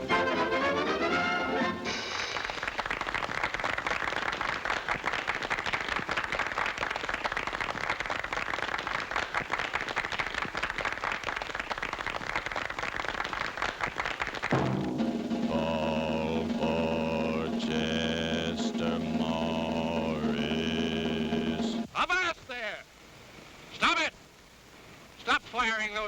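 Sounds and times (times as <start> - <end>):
crowd applauding: 2.0 - 14.8.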